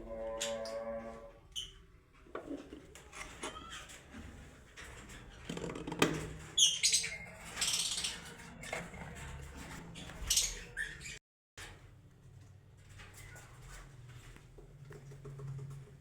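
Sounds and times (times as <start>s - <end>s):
lovebirds chirping and squawking: 0.0s - 1.8s, 6.4s - 9.0s, 9.8s - 11.2s.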